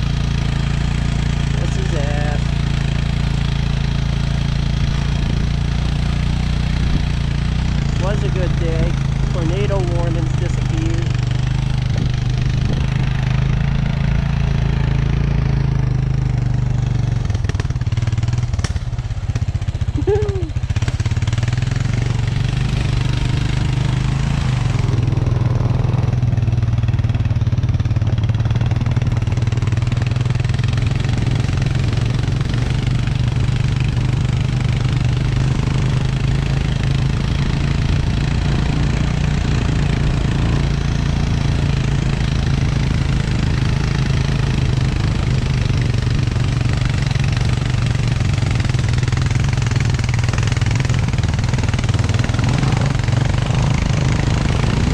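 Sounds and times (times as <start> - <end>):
vehicle engine running: 0.0 - 54.9
wind and riding noise: 0.0 - 54.9.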